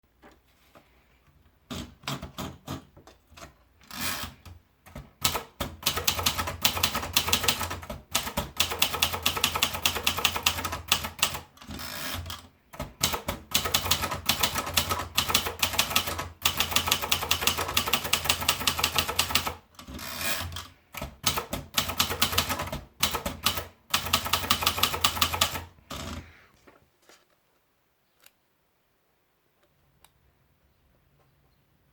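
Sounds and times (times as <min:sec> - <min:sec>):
typewriter keystrokes clattering: 0:04.2 - 0:26.1.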